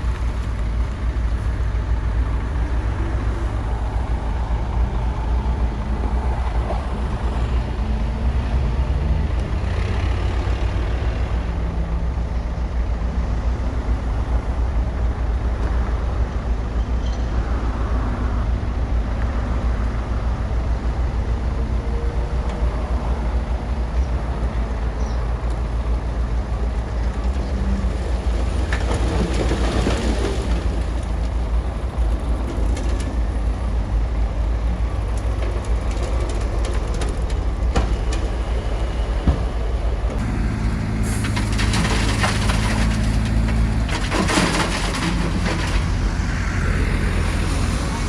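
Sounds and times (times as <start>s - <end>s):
bulldozer diesel engine rumbling: 0.0s - 48.0s
metal clanks and rattles: 25.1s - 46.2s.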